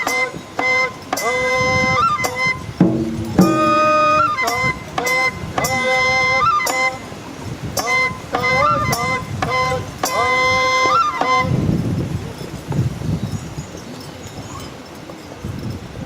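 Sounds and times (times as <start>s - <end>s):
bamboo flute melody: 0.0s - 11.8s
sharp percussion strikes: 2.2s - 5.9s
low rustling: 2.8s - 4.3s.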